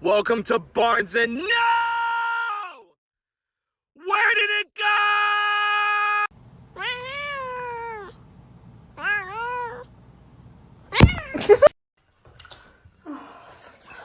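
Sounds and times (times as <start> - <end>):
cat meowing: 6.8 - 8.2, 9.0 - 9.9, 10.9 - 11.4
loud thump: 11.0 - 11.3.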